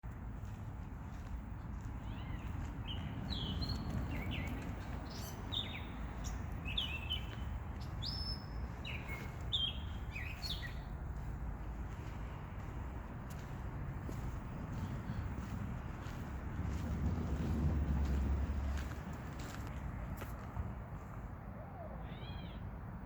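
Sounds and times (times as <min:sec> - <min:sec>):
low rumble of city noise: 0:00.0 - 0:23.0
songbird whistling: 0:08.0 - 0:10.8.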